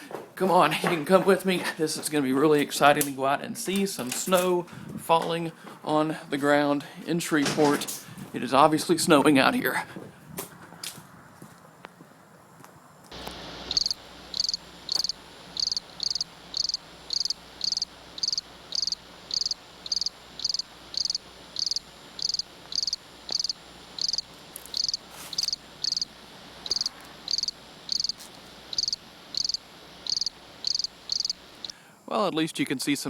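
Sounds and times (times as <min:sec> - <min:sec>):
faint steady hiss: 0:12.6 - 0:33.0
cricket chirping: 0:12.8 - 0:32.1.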